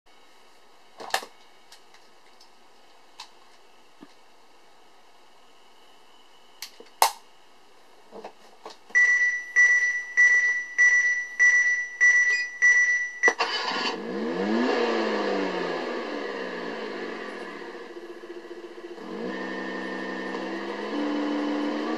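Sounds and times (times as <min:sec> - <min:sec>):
simulated engine revving: 0:13.4 - 0:21.9.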